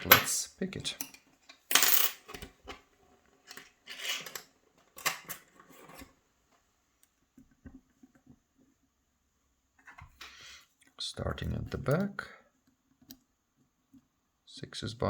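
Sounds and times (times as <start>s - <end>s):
lockpicks scraping in a lock: 3.4s - 6.0s.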